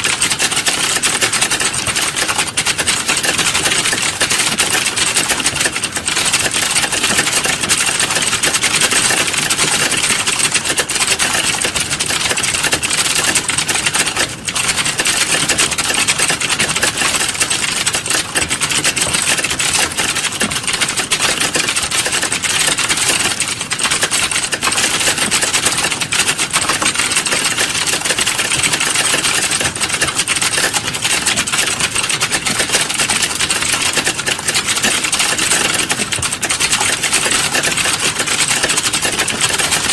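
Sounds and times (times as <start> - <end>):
rapid typing on keyboard: 0.0 - 39.9.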